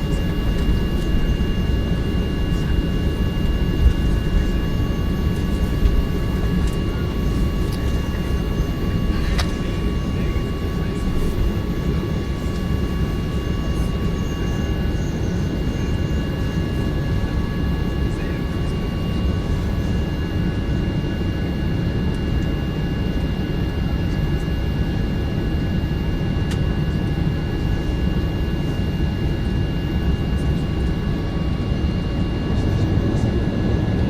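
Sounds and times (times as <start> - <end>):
faint whining tones: 0.0 - 21.2
jet airliner rumble: 0.0 - 34.0.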